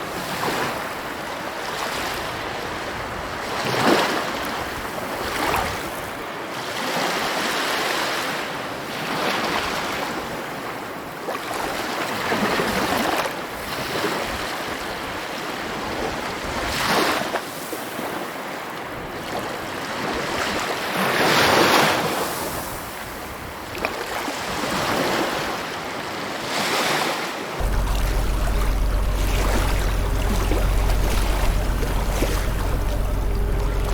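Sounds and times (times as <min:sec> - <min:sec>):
sea waves breaking: 0:27.6 - 0:33.9
steady low rumble: 0:27.6 - 0:33.9.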